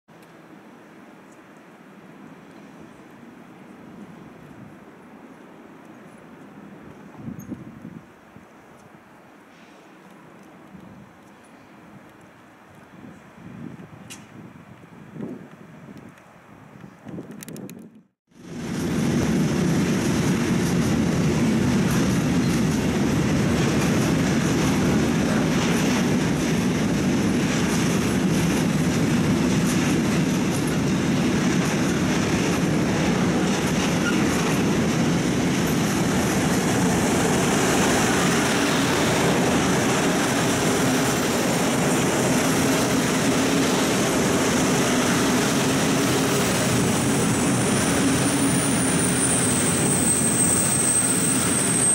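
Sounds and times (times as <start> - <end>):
train wheels rumbling on rails: 18.4 - 51.9.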